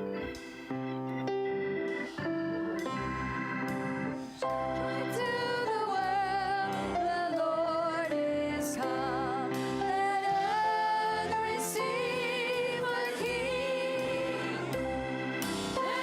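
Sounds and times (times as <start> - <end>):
instrumental accompaniment: 0.0 - 16.0
person singing with vibrato: 4.9 - 16.0.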